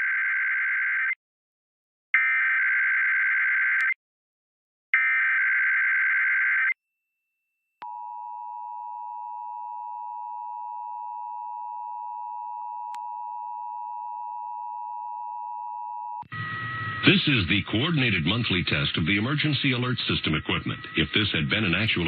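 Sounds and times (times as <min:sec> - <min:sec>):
two-tone attention signal: 0:16.2 - 0:18.5, 0:19.1 - 0:22.0
modem-like data burst: 0:16.3 - 0:22.0.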